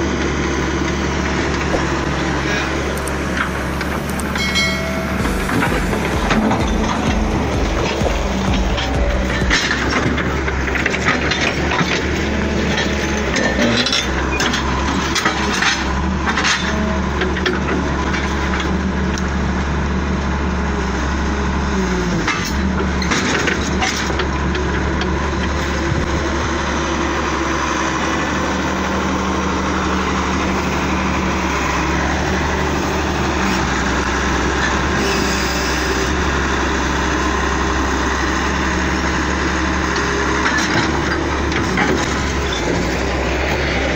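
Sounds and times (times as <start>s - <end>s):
diesel engine running: 0.0s - 43.9s
metallic clanks and knocks: 3.4s - 17.6s.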